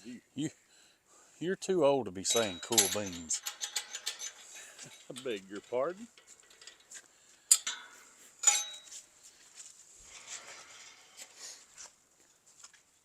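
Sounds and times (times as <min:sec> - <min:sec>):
sharp metal clanks: 0:02.3 - 0:09.1
light metal clinks: 0:02.3 - 0:09.2.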